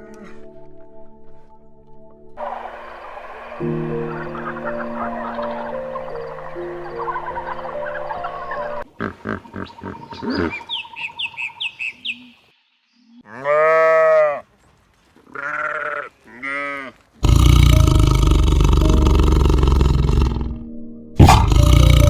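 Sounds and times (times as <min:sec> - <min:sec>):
sheep bleating: 0:13.2 - 0:14.5, 0:15.3 - 0:17.1.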